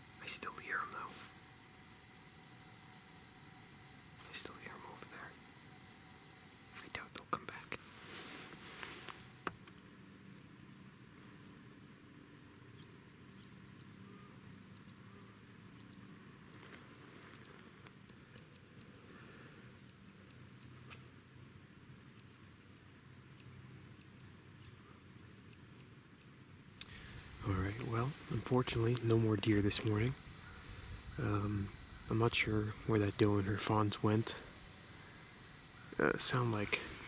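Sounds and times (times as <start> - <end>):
faint small bird chips: 12.8 - 17.7.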